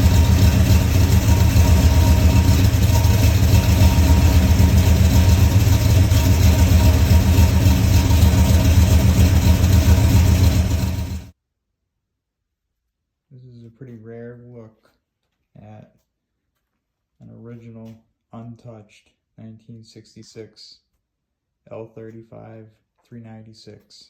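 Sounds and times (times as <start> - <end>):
engine idling loudly: 0.0 - 11.3.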